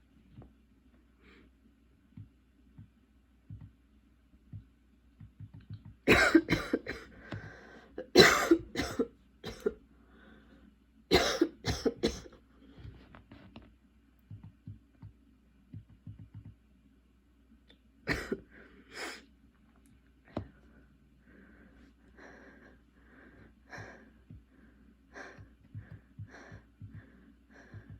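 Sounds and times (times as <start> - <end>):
woman coughing harshly: 6.1 - 7.1, 8.0 - 9.8, 11.1 - 12.3, 18.1 - 18.5.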